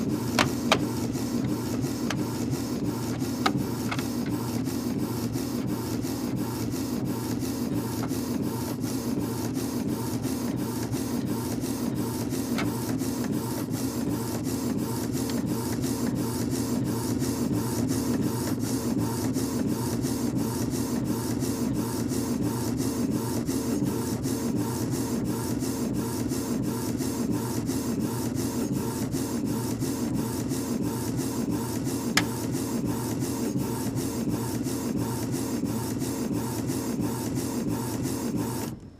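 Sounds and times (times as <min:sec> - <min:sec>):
printer click: 0:00.0 - 0:04.5, 0:12.2 - 0:13.7, 0:32.0 - 0:32.6
paper-feed motor hum: 0:00.0 - 0:38.9
printer head shuttling: 0:00.2 - 0:02.3.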